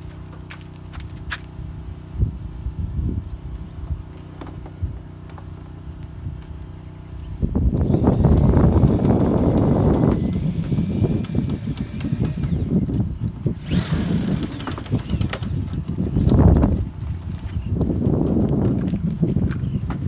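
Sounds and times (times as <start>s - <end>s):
drill motor whining: 7.8s - 15.9s.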